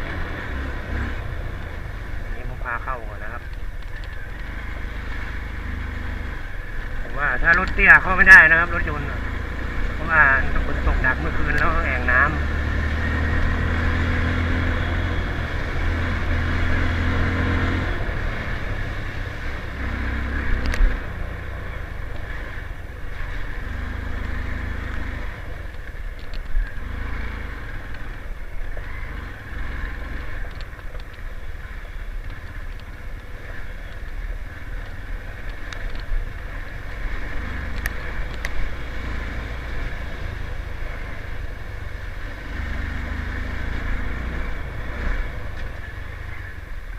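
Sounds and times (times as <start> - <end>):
motorcycle engine running: 0.0 - 46.9.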